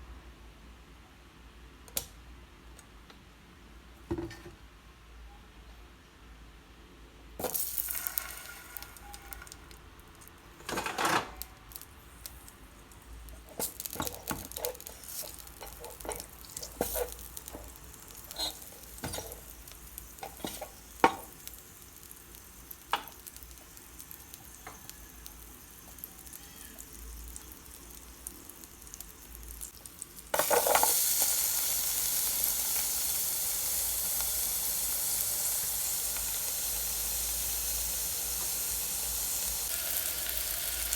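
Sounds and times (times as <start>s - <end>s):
food frying sizzle: 7.4s - 40.9s
utensil scraping a pot: 18.3s - 19.4s.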